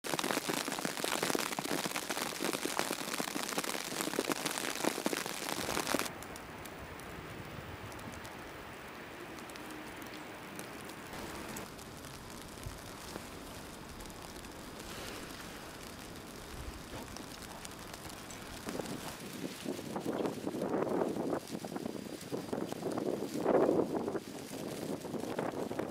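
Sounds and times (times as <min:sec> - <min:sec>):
wind buffeting microphone: 0:11.1 - 0:25.9.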